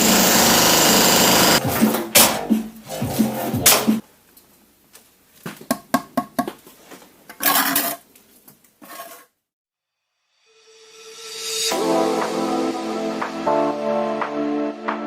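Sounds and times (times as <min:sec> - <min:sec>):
tools and materials clattering: 0:06.4 - 0:08.1.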